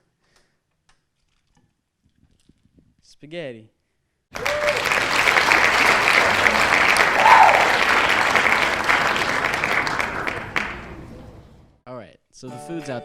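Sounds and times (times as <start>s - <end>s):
crowd applauding: 4.3s - 11.5s.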